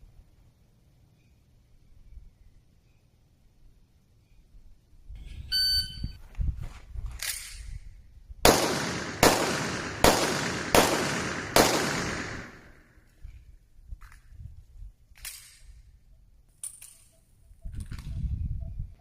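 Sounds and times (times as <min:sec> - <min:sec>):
short electronic beep: 0:05.4 - 0:06.2
handgun shots echoing: 0:08.5 - 0:12.8.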